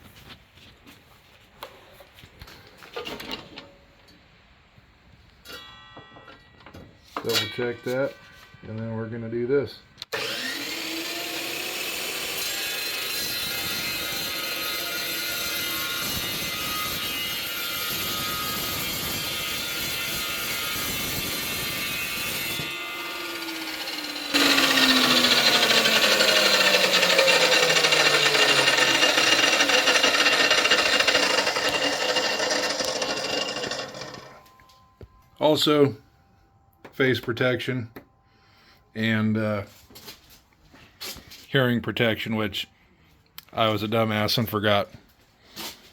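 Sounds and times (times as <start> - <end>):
chop saw motor spinning: 10.1 - 13.1, 22.5 - 34.5
loud chop saw cutting steel: 10.1 - 34.5.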